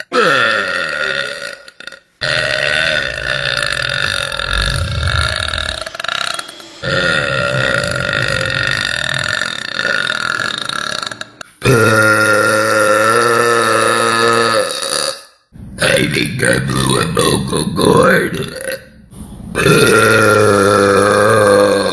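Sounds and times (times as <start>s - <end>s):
woman burping: 0.0s - 5.8s.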